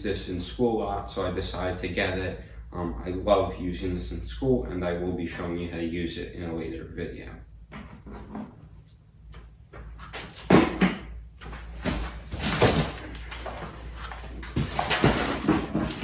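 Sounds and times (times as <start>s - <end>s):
cardboard box rustling and scraping: 11.4s - 16.0s.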